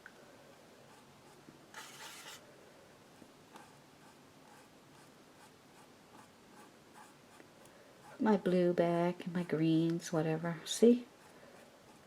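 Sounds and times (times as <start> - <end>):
paintbrush scratching on canvas: 0.9 - 2.4.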